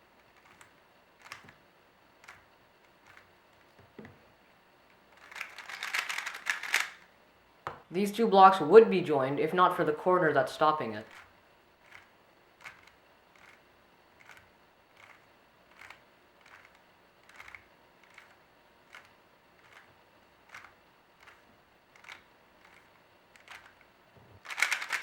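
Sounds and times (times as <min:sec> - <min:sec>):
puzzle cube face turn clicks: 0:00.3 - 0:01.6, 0:05.2 - 0:07.0, 0:11.9 - 0:13.6, 0:14.2 - 0:19.9, 0:22.0 - 0:23.8, 0:24.4 - 0:25.0.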